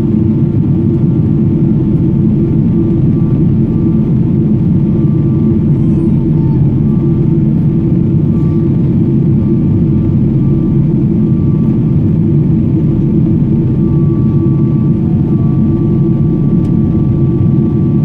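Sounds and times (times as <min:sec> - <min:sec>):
jet engine cabin drone: 0:00.0 - 0:18.0
faint whining tones: 0:00.2 - 0:18.0.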